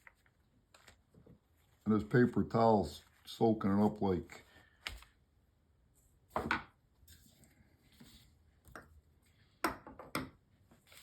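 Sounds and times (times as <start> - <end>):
paper towel rustling: 0.0 - 5.3, 10.6 - 11.0.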